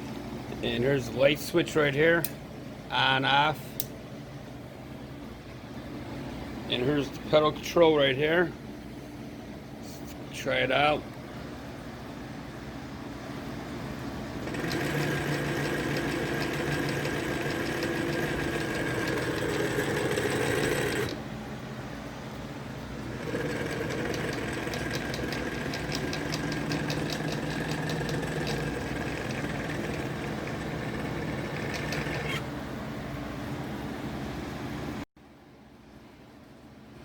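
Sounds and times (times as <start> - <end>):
sewing machine running: 14.4 - 21.2, 23.0 - 32.4.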